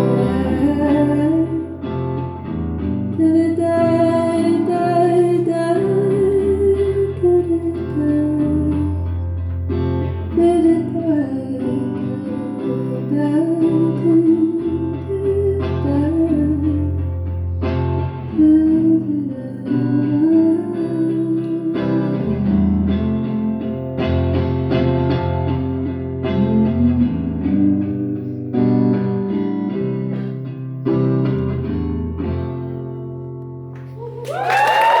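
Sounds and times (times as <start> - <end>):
guitar playing: 0.0 - 35.0
audience applause and cheering: 33.8 - 35.0.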